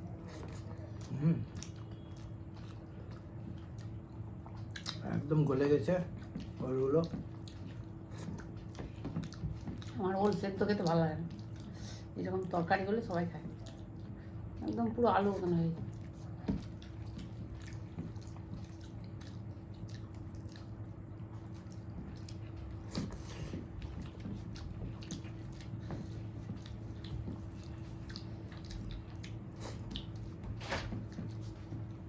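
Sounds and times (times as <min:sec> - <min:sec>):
person chewing food: 0:00.0 - 0:12.6, 0:13.3 - 0:14.7, 0:15.3 - 0:32.0
steady low hum: 0:00.0 - 0:32.0.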